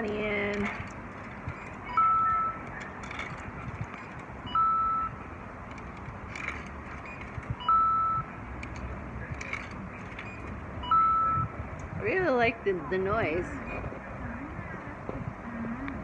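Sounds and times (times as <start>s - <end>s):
vending machine beeping: 0.0s - 11.6s
steady background noise: 0.0s - 16.0s.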